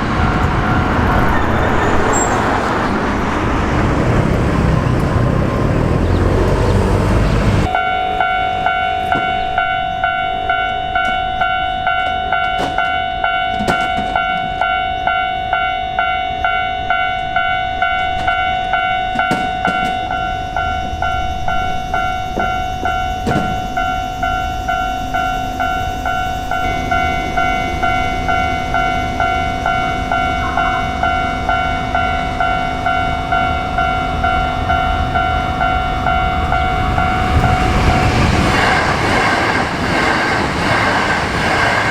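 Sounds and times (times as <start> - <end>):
traffic-like noise: 0.0 - 7.9
level crossing warning bell: 0.0 - 38.6
higher electronic tone: 20.4 - 38.2.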